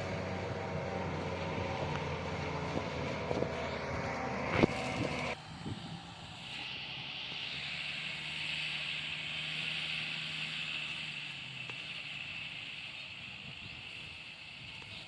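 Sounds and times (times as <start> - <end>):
distant heavy machine engine: 0.0 - 15.0.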